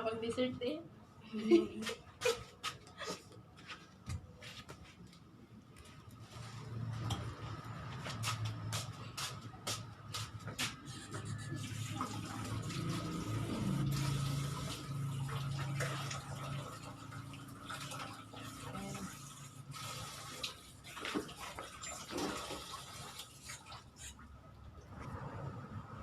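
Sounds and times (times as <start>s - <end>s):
water running: 11.5s - 24.2s.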